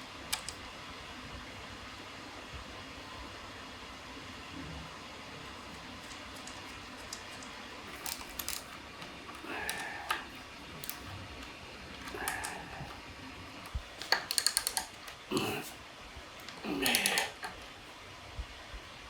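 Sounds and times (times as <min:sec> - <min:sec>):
small metal tools clicking: 0:06.4 - 0:08.8, 0:14.0 - 0:15.2.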